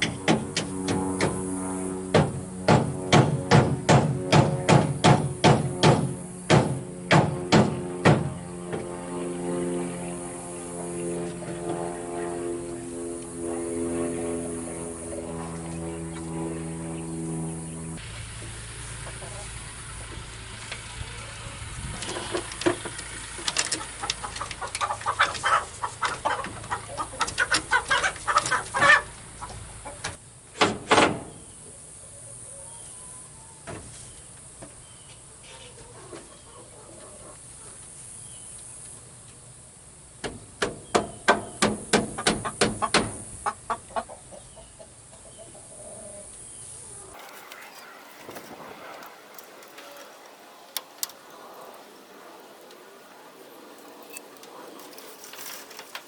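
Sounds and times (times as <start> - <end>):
chickens clucking: 18.9 - 20.2, 21.9 - 30.2, 42.1 - 56.0
chicken squawk: 23.8 - 30.0, 46.9 - 53.4.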